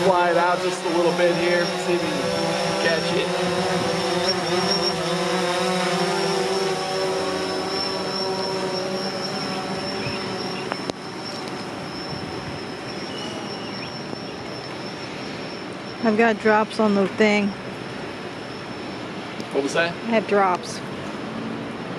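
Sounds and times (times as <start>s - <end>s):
drone propellers buzzing: 0.0s - 21.9s.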